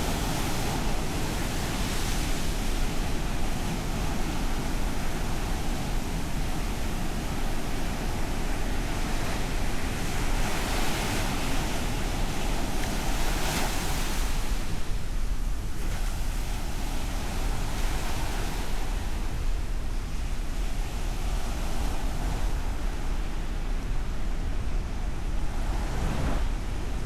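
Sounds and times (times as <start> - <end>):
wind rumble on microphone: 0.0 - 27.0
ocean surf breaking: 25.2 - 27.0.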